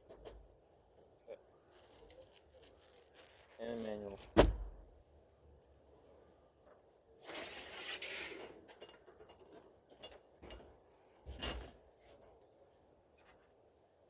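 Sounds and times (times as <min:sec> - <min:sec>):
paper or plastic rustling: 0:01.7 - 0:04.4.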